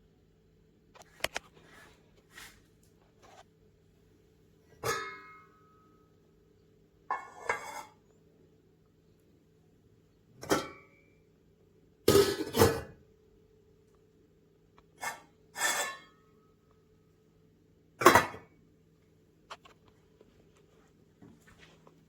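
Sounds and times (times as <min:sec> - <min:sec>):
metal pan clanging: 0:04.8 - 0:05.6, 0:12.1 - 0:12.9.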